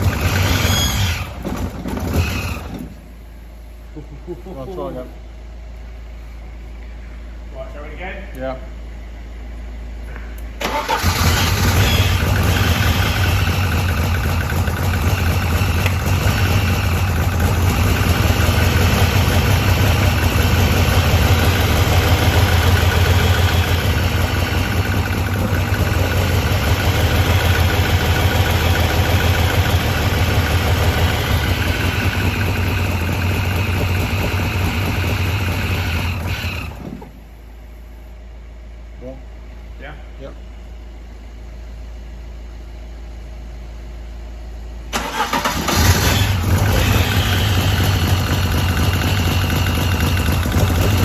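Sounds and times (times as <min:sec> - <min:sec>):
car engine starting and running: 0:00.0 - 0:03.8, 0:10.6 - 0:37.6, 0:44.1 - 0:51.0.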